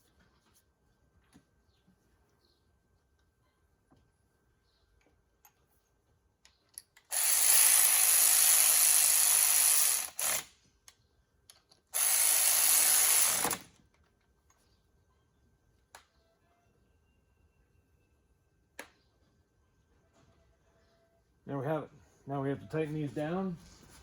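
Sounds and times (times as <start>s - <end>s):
small clicks of tools and parts: 5.0s - 5.8s, 6.4s - 7.1s, 10.4s - 12.0s, 13.4s - 14.7s, 15.8s - 16.2s, 18.8s - 19.0s
power tool running: 7.1s - 10.5s, 12.0s - 13.7s.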